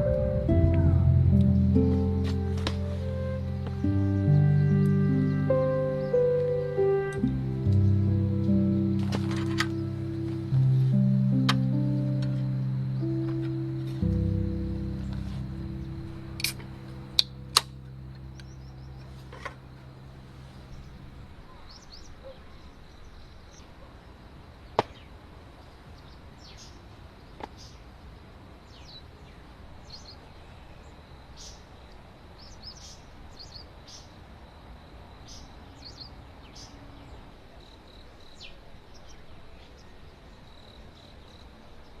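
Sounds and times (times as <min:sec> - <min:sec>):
faint steady high tone: 0:00.0 - 0:21.2
low hum: 0:00.0 - 0:21.3.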